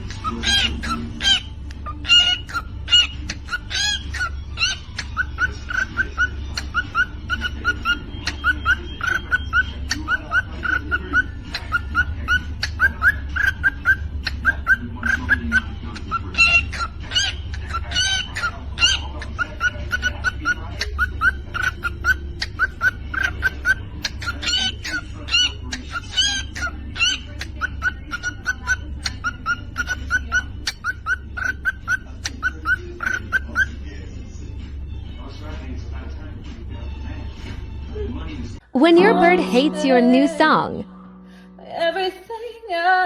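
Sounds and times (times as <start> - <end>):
bird chirping: 0.0 - 33.8.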